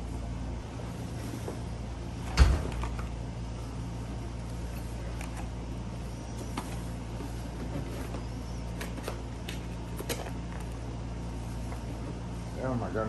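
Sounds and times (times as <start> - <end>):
steady low hum: 0.0 - 13.0
packaging clicks and rustles: 4.4 - 12.2.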